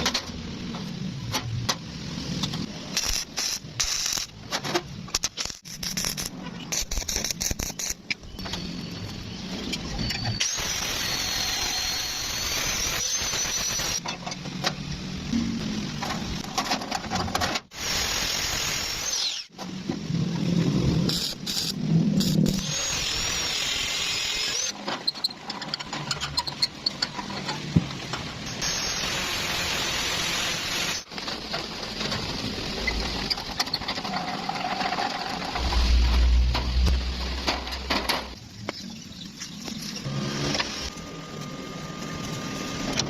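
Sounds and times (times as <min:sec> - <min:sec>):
workshop power tools running: 0:10.4 - 0:14.0, 0:17.7 - 0:19.6, 0:21.3 - 0:24.8, 0:28.4 - 0:31.1, 0:40.0 - 0:43.0.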